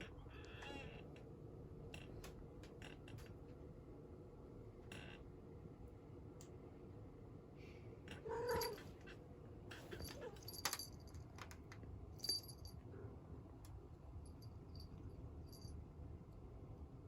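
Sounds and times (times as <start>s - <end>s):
cat meowing: 8.2s - 8.8s.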